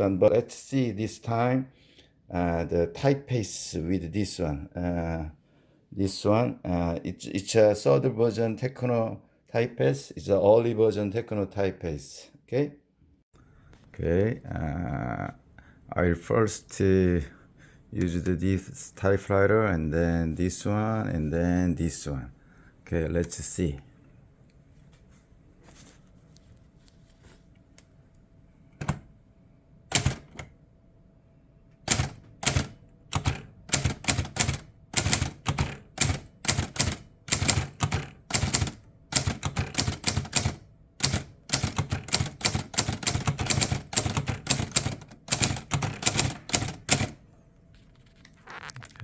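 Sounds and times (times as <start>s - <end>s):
manual typewriter key strikes: 29.9s - 30.5s, 31.8s - 47.2s.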